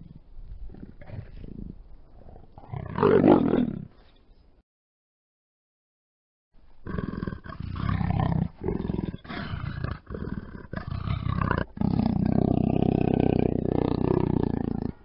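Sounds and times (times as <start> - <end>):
panther roaring and growling: 6.9 - 15.0.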